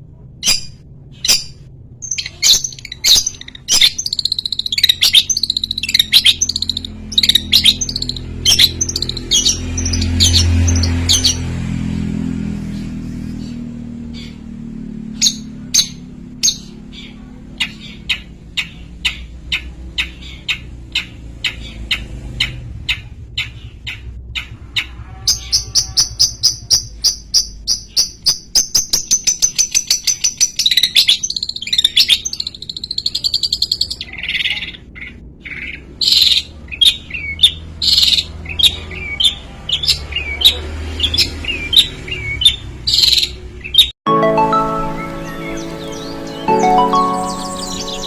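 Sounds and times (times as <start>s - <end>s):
shrike singing: 44.1s - 48.0s.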